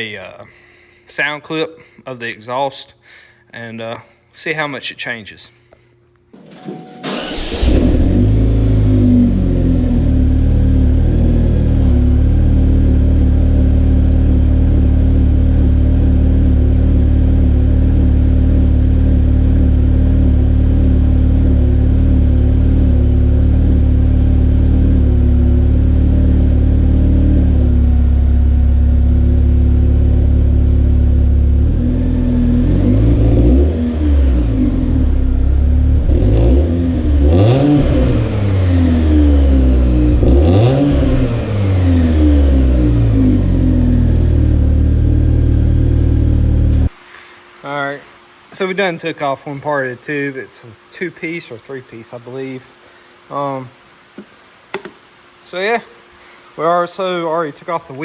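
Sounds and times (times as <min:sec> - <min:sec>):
car engine idling and revving: 0:07.2 - 0:46.9.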